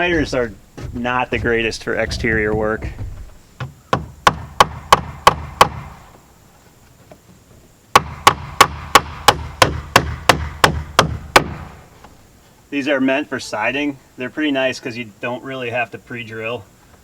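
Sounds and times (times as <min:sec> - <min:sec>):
hammer striking nails into wood: 0:03.9 - 0:06.0, 0:07.9 - 0:11.7.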